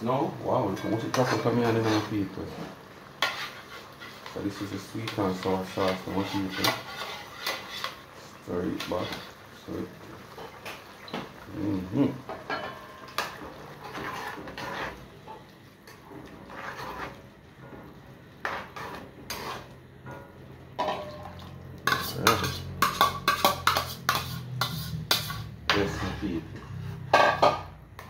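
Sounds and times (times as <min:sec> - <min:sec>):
spoon scraping and clinking pot: 0:03.2 - 0:04.5, 0:05.1 - 0:08.0, 0:12.3 - 0:17.2, 0:18.4 - 0:19.8, 0:20.8 - 0:26.2.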